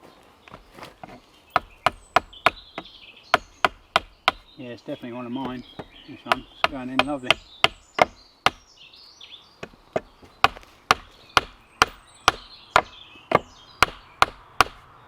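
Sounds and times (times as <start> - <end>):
hammer driving wooden peg: 1.6 - 4.5, 5.4 - 8.6, 9.6 - 14.8.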